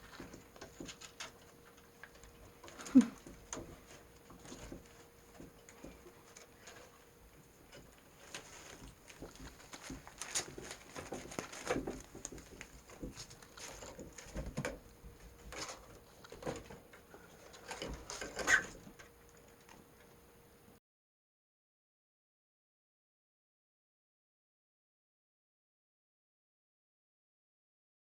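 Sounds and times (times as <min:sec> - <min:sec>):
kittens play-fighting patters: 0:00.0 - 0:19.8.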